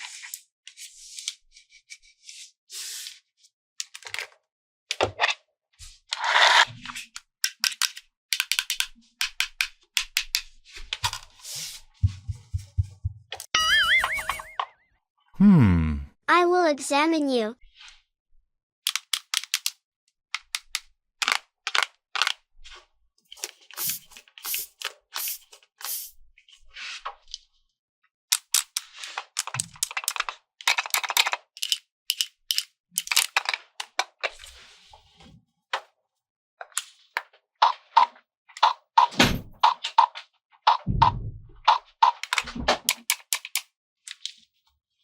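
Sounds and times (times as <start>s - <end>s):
plastic toy pieces clicking: 7.4s - 10.5s, 18.8s - 22.4s, 28.3s - 34.1s, 41.7s - 44.4s.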